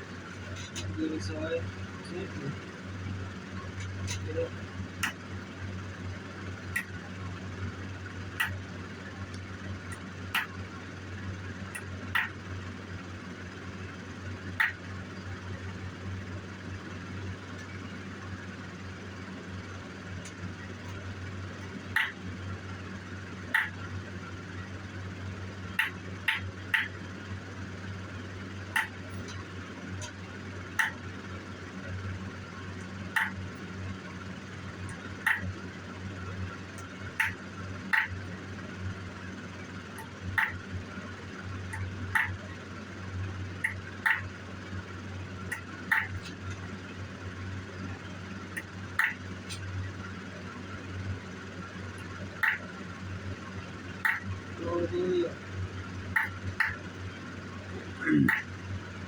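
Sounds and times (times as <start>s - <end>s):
steady low hum: 0.0s - 59.0s.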